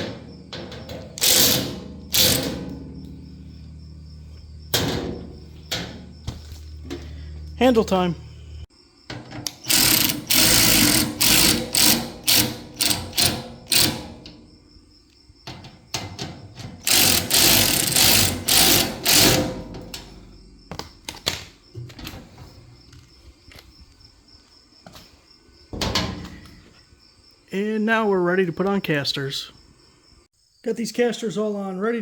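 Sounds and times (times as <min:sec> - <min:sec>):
power tool driving bolts: 0:00.0 - 0:03.2, 0:04.7 - 0:06.1, 0:09.1 - 0:14.4, 0:15.6 - 0:22.2.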